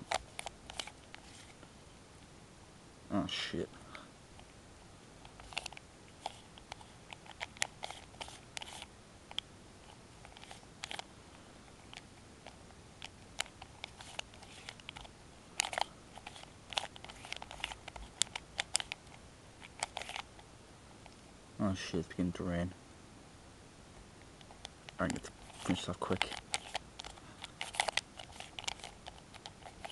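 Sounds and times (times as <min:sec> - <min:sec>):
plastic puzzle cube clicking: 0:24.9 - 0:29.9.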